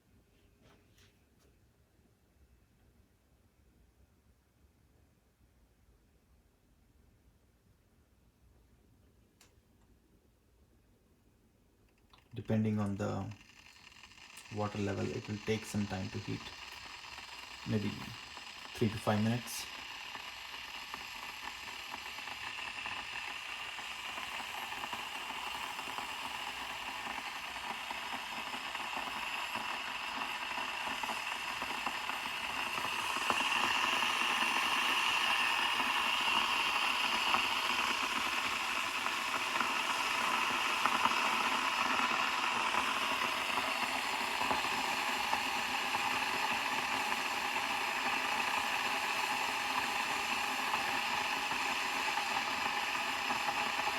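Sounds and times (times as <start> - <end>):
electric kettle heating water: 12.1 - 53.9.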